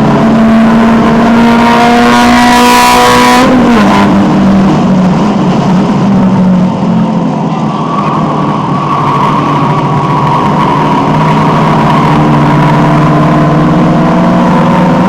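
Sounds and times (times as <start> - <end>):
car engine running hard: 0.0 - 15.0.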